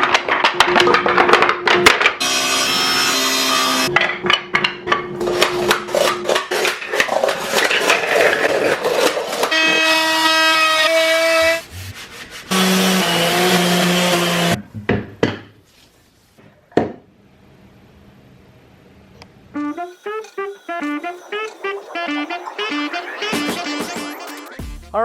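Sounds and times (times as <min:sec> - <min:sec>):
sawing wood: 0:02.2 - 0:03.9, 0:07.3 - 0:14.6
sustained tones: 0:19.5 - 0:24.6.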